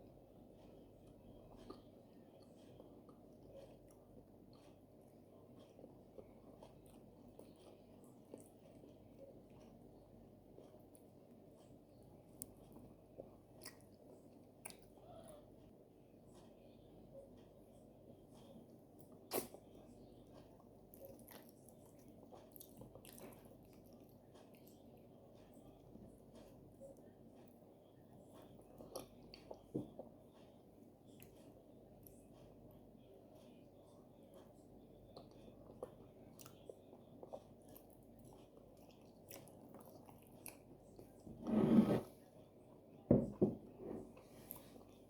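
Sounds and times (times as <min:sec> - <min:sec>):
wet chewing: 0:20.4 - 0:25.1.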